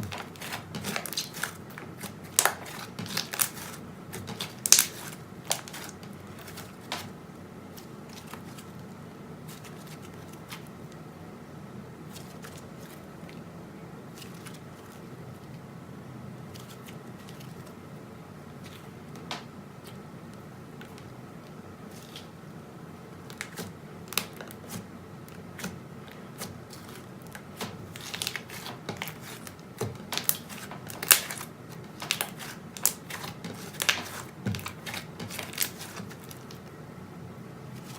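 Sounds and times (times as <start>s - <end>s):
slime popping and squishing: 0.0s - 7.0s.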